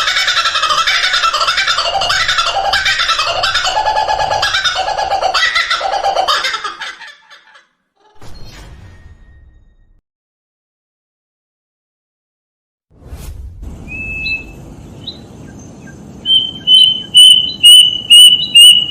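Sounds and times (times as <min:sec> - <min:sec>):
bird chirping: 0:00.0 - 0:06.3, 0:13.9 - 0:18.9.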